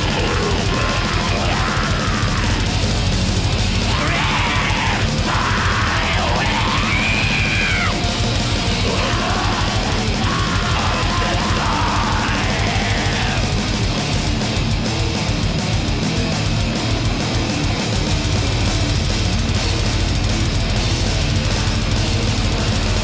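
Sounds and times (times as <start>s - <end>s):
harsh screamed vocals: 0.0s - 14.0s
black metal band playing: 0.0s - 23.0s.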